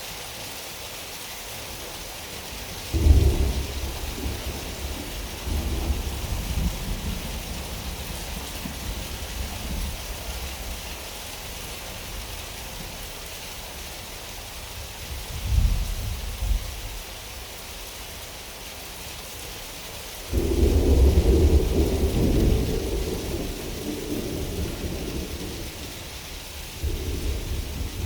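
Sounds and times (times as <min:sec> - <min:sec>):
heavy rain hissing: 0:00.0 - 0:28.0
rolling thunder: 0:02.9 - 0:10.9, 0:20.3 - 0:28.0.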